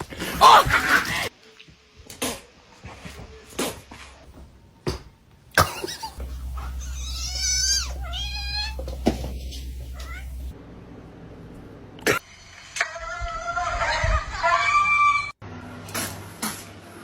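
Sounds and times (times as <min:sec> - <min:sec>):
low steady hum: 0:05.6 - 0:12.0
cat meowing: 0:06.7 - 0:10.5.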